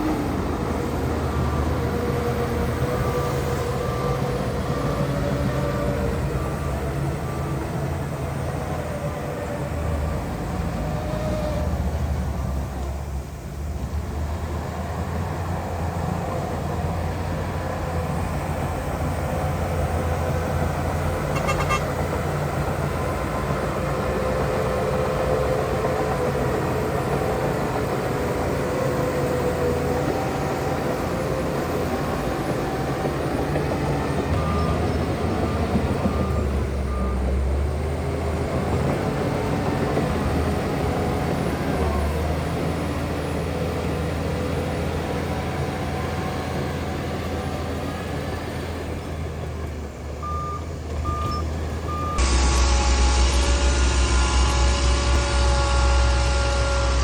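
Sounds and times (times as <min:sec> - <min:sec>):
diesel machinery running: 0:00.0 - 0:57.0
short beeps: 0:50.2 - 0:55.1.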